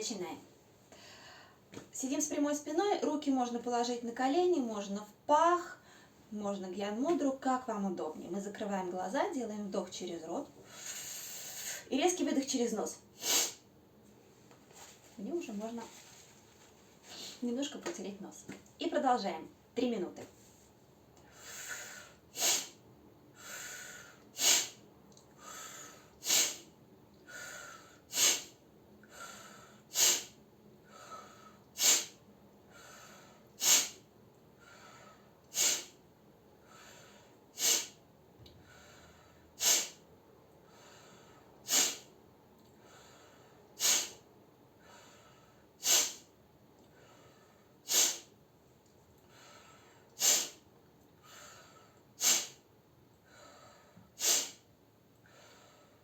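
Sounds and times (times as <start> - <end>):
forceful breath out through nose: 40.7 - 42.1, 42.9 - 44.2, 44.8 - 46.3, 51.3 - 52.6, 53.3 - 54.7.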